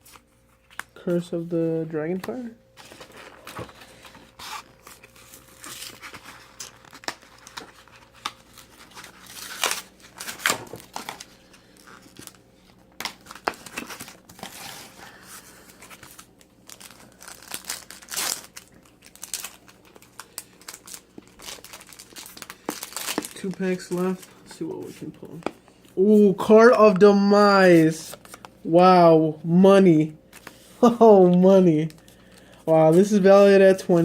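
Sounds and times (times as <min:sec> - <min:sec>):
wrappers crinkling and tearing: 0:02.8 - 0:26.0, 0:27.6 - 0:28.7.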